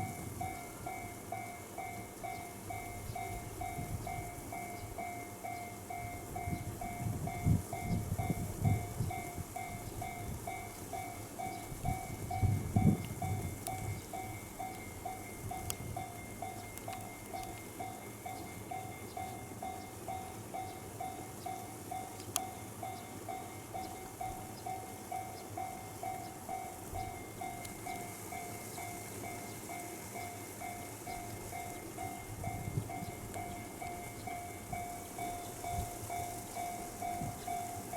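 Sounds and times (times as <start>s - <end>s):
train rumbling past: 0.0s - 37.9s.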